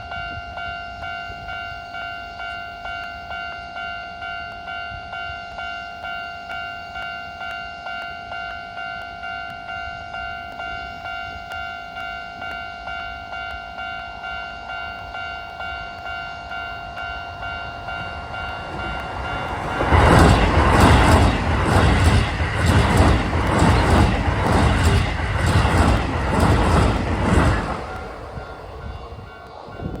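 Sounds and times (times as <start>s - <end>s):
level-crossing warning bell: 0.0s - 30.0s
train wheels clattering over rail joints: 17.5s - 30.0s.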